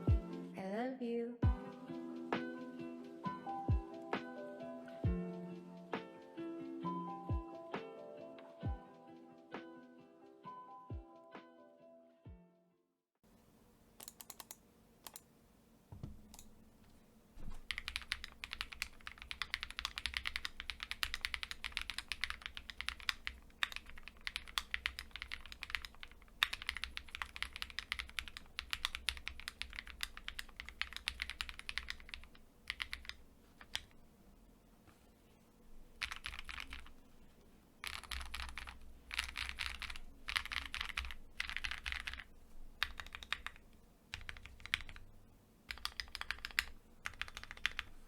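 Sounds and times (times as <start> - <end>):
mechanical keyboard typing: 14.0 - 15.2, 17.6 - 33.9, 36.0 - 36.9, 37.8 - 45.0, 45.7 - 47.9.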